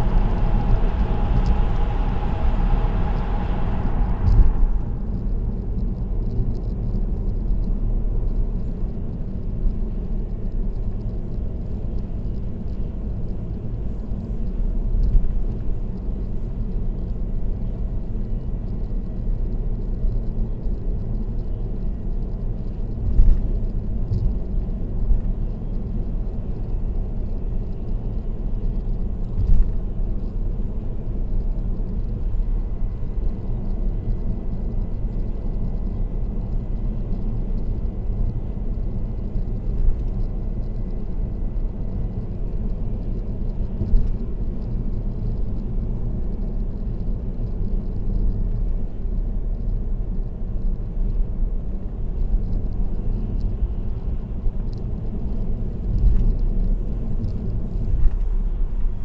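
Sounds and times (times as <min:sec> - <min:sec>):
tyre and road noise: 0:00.0 - 0:59.0.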